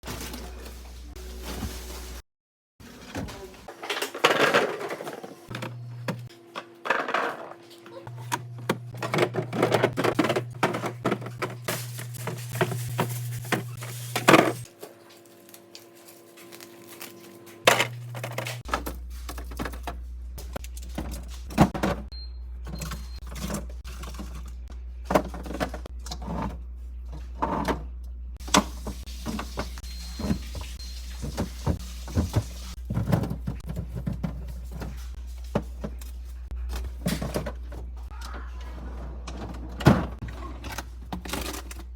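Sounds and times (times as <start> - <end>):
containers tapping and clattering: 8.2 - 14.6, 28.4 - 36.1.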